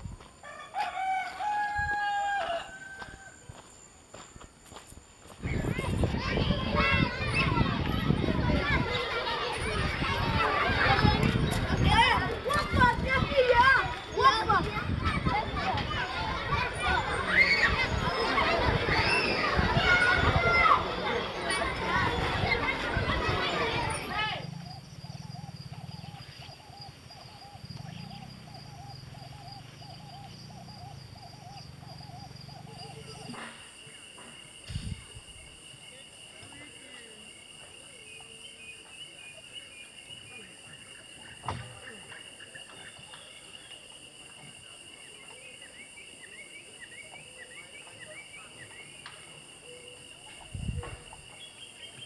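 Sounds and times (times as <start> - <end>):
high insect chorus: 0.0 - 52.0
bird chirping: 23.5 - 52.0.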